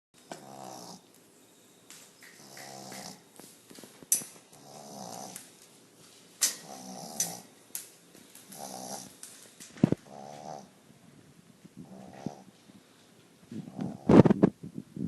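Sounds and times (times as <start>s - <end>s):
boy snoring: 0.3s - 1.0s, 2.4s - 3.2s, 4.6s - 5.4s, 6.6s - 7.5s, 8.5s - 9.2s, 10.0s - 10.7s, 11.8s - 12.5s, 13.7s - 14.2s.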